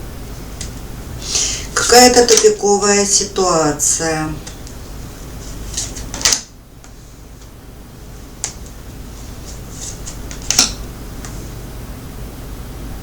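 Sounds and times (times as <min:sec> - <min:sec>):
steady low hum: 0:00.0 - 0:13.0
cards snapping and tapping: 0:05.7 - 0:07.0, 0:08.4 - 0:08.8, 0:09.5 - 0:11.4.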